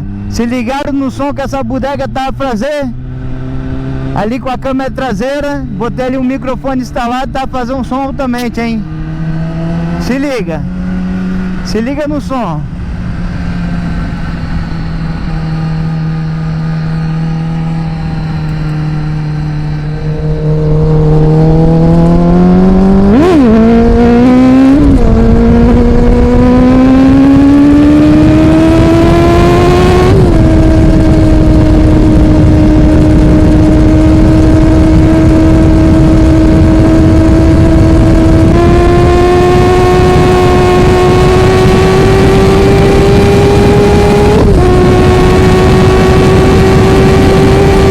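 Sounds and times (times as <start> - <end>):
motorcycle engine revving: 0.0 - 47.9.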